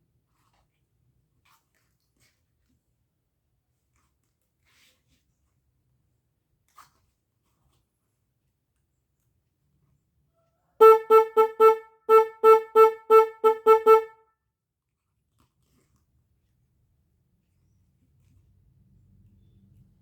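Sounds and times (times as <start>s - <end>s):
motorcycle horn beeps: 10.8s - 14.1s.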